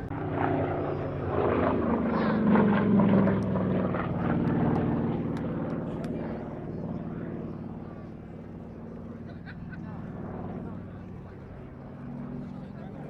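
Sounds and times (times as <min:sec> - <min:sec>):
propeller plane engine: 0:00.0 - 0:13.0.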